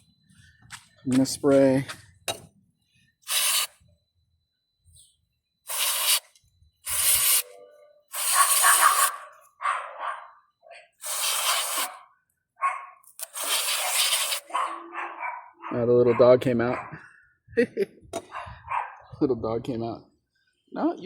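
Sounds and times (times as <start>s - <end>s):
aerosol spray hissing: 3.2s - 3.8s, 5.7s - 7.5s, 8.1s - 9.2s, 11.0s - 12.0s, 13.2s - 14.5s
small dog barking: 8.3s - 10.4s, 11.9s - 13.0s, 14.5s - 17.1s, 18.3s - 19.1s.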